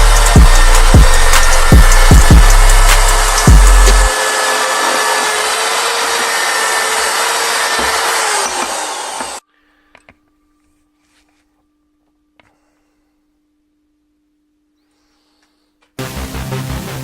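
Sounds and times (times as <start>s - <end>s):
power tool grinding metal: 0.0s - 9.4s.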